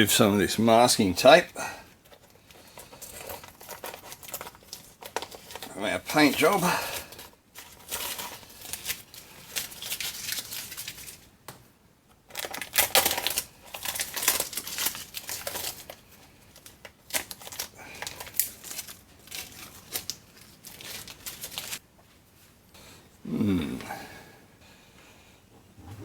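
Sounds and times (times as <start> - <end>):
tape peeling and crumpling: 3.1 - 11.3, 12.3 - 21.8.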